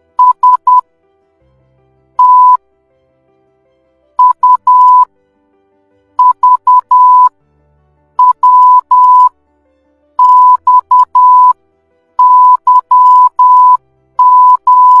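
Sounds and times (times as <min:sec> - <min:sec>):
morse code beeps: 0:00.2 - 0:00.8, 0:02.2 - 0:02.6, 0:04.2 - 0:05.1, 0:06.2 - 0:07.3, 0:08.2 - 0:09.3, 0:10.2 - 0:11.6, 0:12.2 - 0:15.0.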